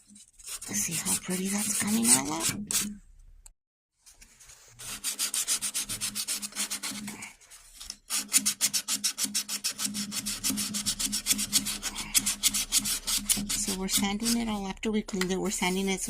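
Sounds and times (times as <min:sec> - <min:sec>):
sandpaper scrubbing wood: 0:00.4 - 0:02.9, 0:04.8 - 0:07.1, 0:08.1 - 0:14.6, 0:15.5 - 0:16.0.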